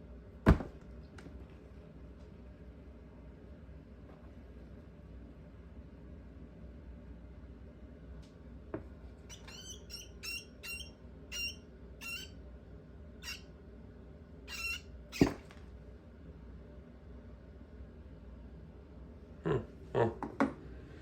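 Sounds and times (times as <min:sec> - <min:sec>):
rat pup squeaking: 0:09.2 - 0:12.4, 0:13.2 - 0:13.5, 0:14.5 - 0:15.4.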